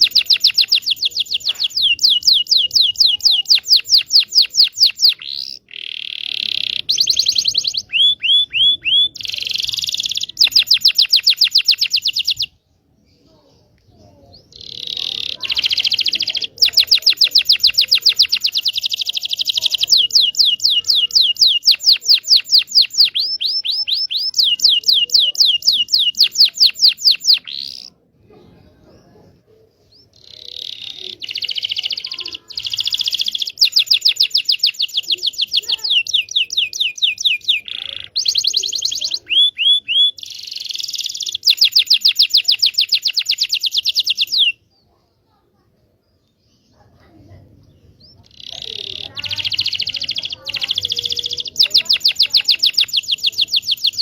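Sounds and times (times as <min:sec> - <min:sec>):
canary singing trills: 0:00.0 - 0:45.0, 0:46.0 - 0:54.0.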